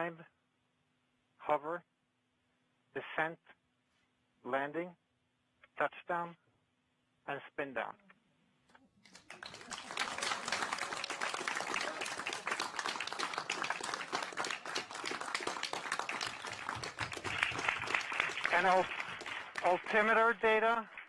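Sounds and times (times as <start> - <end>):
room full of people clapping: 9.0 - 21.0.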